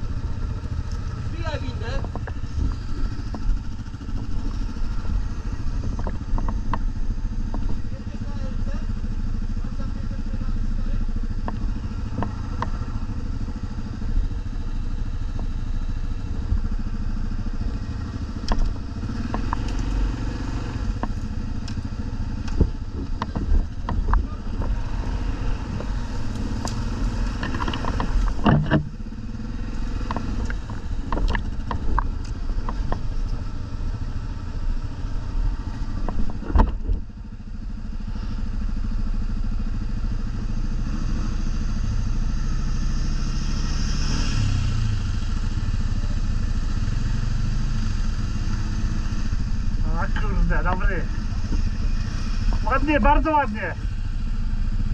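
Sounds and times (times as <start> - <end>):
quad engine running: 0.0 - 54.9
knocks and clatter: 2.0 - 4.7, 22.4 - 24.8, 25.7 - 29.0.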